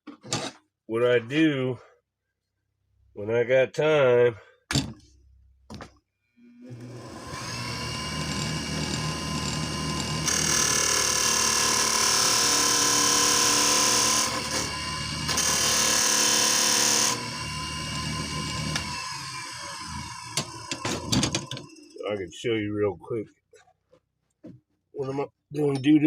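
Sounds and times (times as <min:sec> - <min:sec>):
tool cutting into spinning wood: 0:06.7 - 0:22.0
wood lathe motor running: 0:06.7 - 0:22.0.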